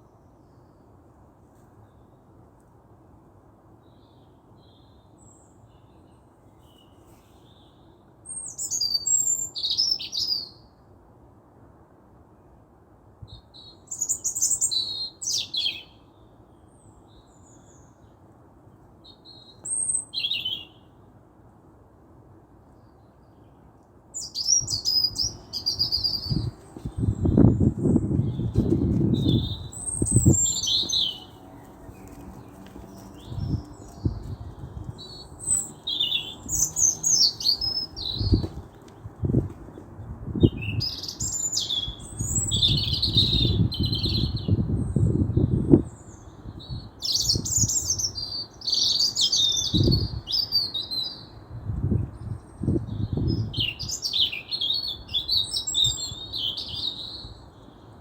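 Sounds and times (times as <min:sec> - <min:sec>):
small birds chirping: 0:24.2 - 0:51.3.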